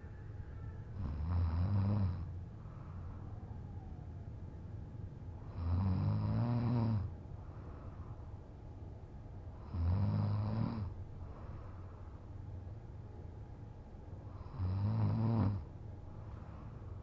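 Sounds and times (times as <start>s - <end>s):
man snoring: 1.0s - 2.3s, 5.5s - 7.1s, 9.6s - 10.9s, 14.4s - 15.6s.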